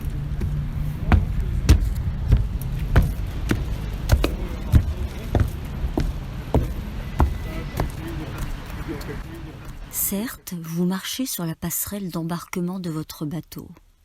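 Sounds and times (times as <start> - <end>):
footsteps on gangway: 0.0 - 10.0
low rumble: 0.0 - 10.4.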